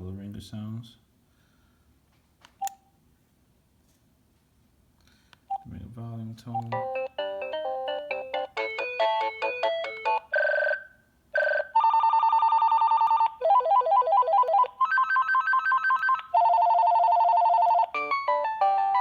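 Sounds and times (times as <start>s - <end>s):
cordless phone ringtones: 6.7s - 19.0s.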